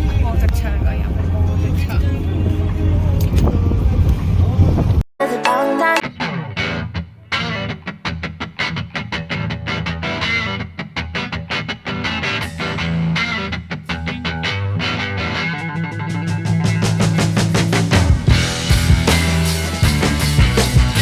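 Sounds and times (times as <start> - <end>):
steady bass: 0.0 - 5.0, 12.4 - 21.0
distorted plucked guitar: 0.0 - 21.0.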